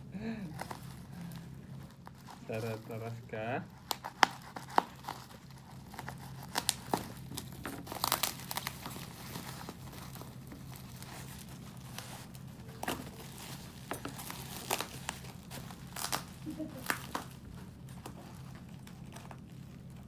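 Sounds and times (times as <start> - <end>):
packaging crinkling and tearing: 0.5 - 20.0.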